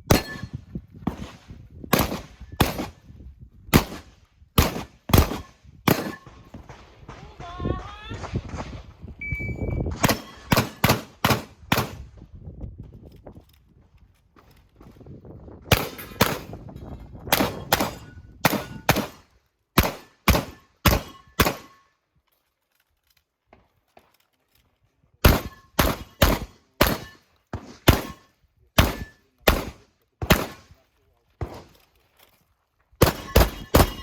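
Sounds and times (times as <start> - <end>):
shotgun firing: 0.1 - 3.0, 3.7 - 7.5, 9.9 - 12.1, 15.7 - 16.6, 17.3 - 19.2, 19.8 - 21.8, 25.2 - 28.2, 28.8 - 30.7, 33.0 - 34.0.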